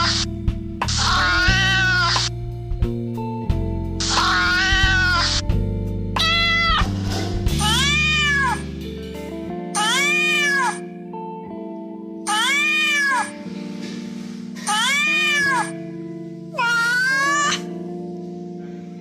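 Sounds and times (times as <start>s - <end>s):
cat meowing: 0.0s - 0.2s, 0.9s - 2.3s, 4.0s - 5.4s, 6.2s - 6.9s, 7.6s - 8.6s, 9.8s - 10.8s, 12.3s - 13.4s, 14.6s - 15.8s, 16.5s - 17.7s
background music: 0.0s - 19.0s.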